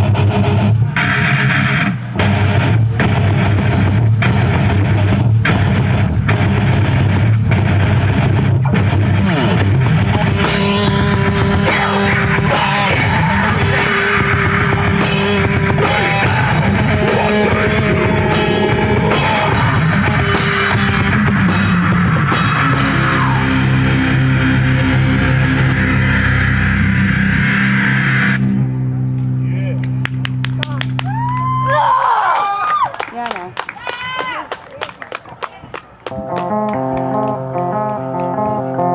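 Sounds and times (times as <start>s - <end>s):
live heavy metal band: 0.0s - 28.6s
bending guitar notes: 0.0s - 31.6s, 36.1s - 38.9s.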